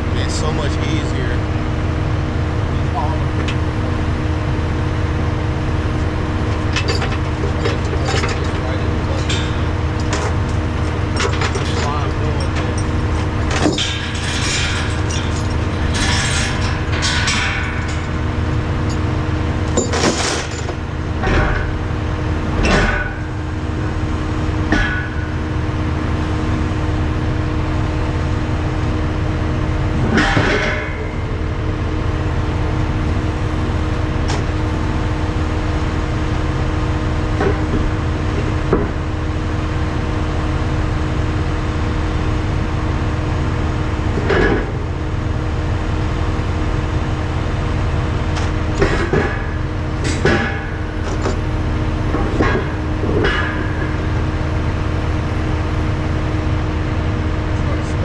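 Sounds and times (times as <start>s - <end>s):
diesel engine running: 0.0s - 58.0s
metallic clunks and rattles: 6.6s - 21.8s, 44.2s - 44.9s, 48.3s - 51.5s.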